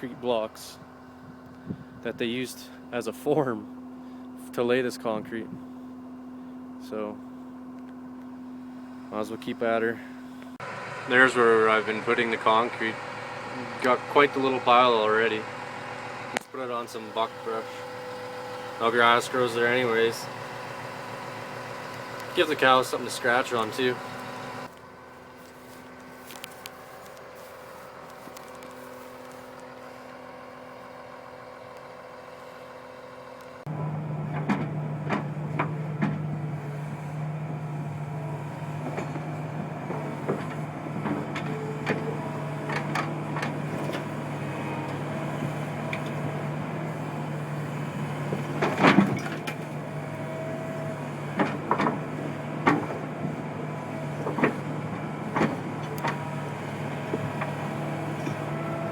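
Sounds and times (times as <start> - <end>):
diesel engine running: 0.0 - 58.9
machine clanks and knocks: 34.3 - 36.4, 39.9 - 44.1, 48.3 - 49.7, 51.3 - 53.4.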